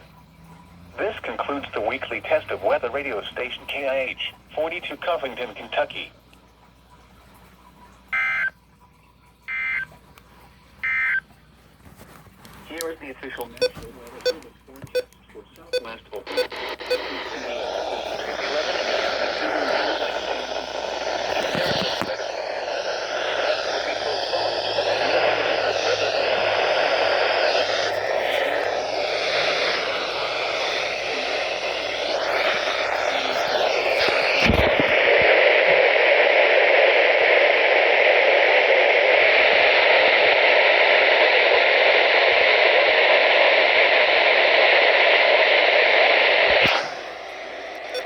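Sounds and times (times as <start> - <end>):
radio static hiss: 1.0 - 6.2, 12.0 - 48.0
garbled warbling radio signal: 13.1 - 37.2, 46.4 - 48.0.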